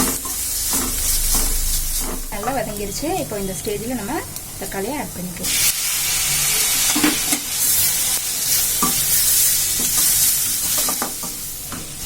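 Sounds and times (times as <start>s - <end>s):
spoon scraping a pan: 0.0s - 2.8s, 6.5s - 11.9s
vegetables sizzling in hot oil: 0.0s - 12.0s.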